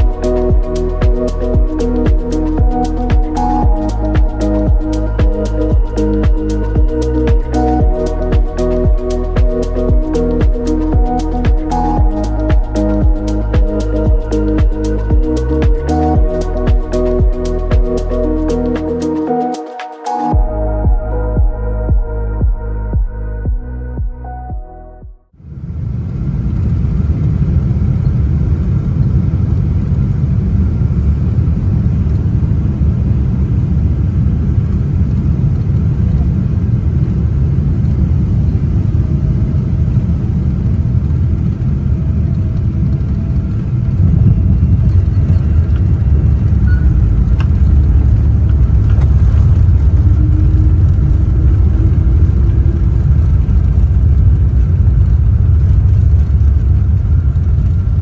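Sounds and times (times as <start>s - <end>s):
airplane cabin engine rumble: 25.4s - 58.0s.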